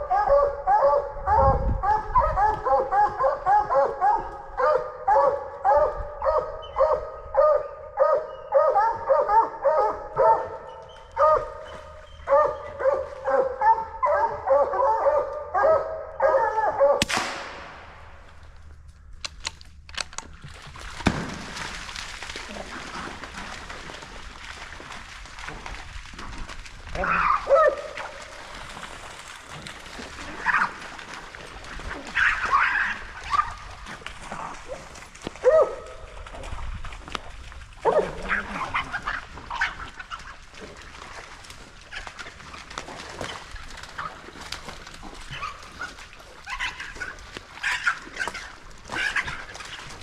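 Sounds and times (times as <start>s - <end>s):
dogs barking rapidly: 0.0s - 17.0s, 27.0s - 28.2s, 37.8s - 40.3s, 45.1s - 50.0s.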